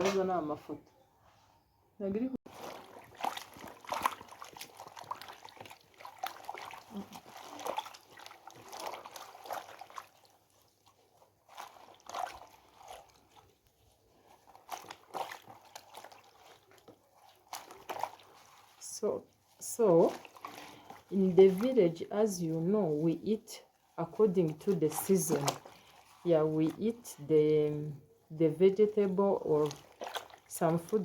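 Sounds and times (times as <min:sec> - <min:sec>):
small liquid splashes: 0:02.5 - 0:31.0.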